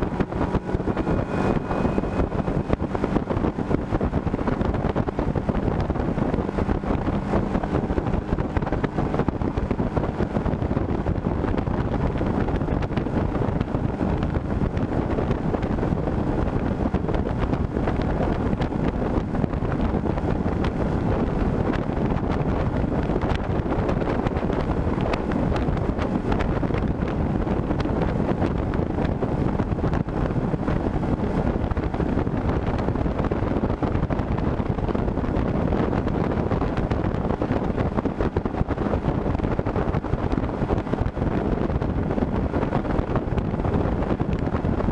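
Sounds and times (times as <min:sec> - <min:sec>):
outboard motor running: 0:00.0 - 0:44.9
wind buffeting microphone: 0:00.0 - 0:44.9.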